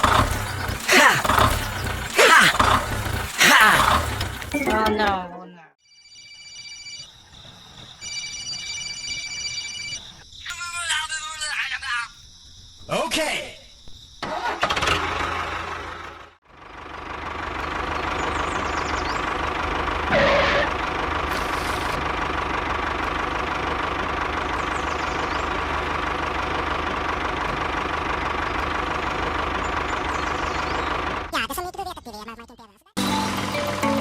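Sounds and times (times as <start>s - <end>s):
small engine running: 0.0s - 4.8s, 14.2s - 31.3s.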